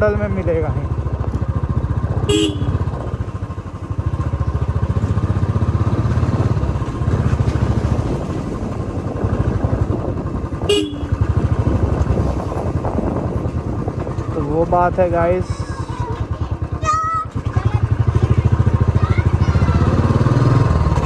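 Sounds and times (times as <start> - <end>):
motorcycle engine thumping: 0.0 - 15.3
horn honks: 2.2 - 3.0, 10.6 - 11.4.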